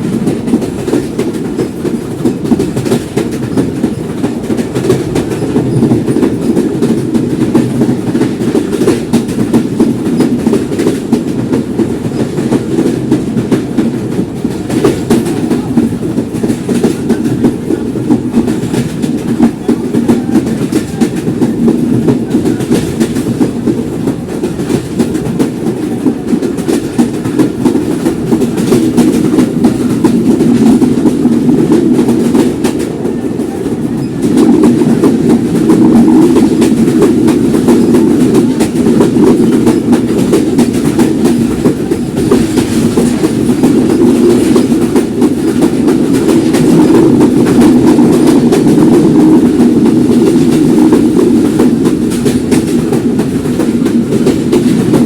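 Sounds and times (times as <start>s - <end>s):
clickety-clack of rail joints: 0.0s - 55.0s
train wheels rumbling on rails: 0.0s - 55.0s.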